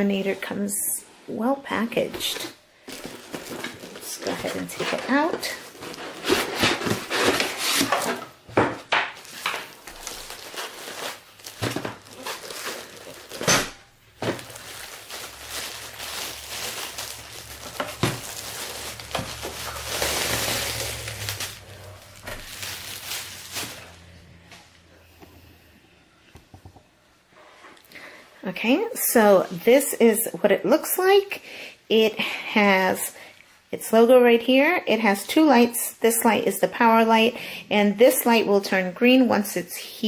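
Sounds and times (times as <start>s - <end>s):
packaging rustling and crinkling: 2.4s - 24.8s.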